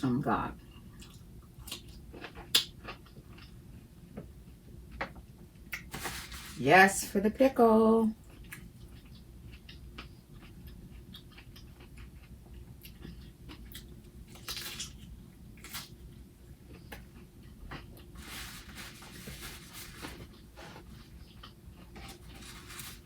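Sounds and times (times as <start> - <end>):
person chewing: 0.9 - 3.6, 8.2 - 15.9.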